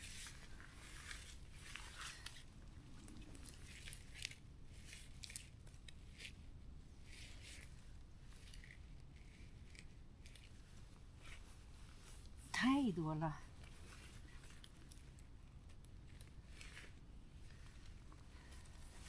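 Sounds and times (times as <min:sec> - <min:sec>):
forest litter crackling: 0:00.0 - 0:05.5.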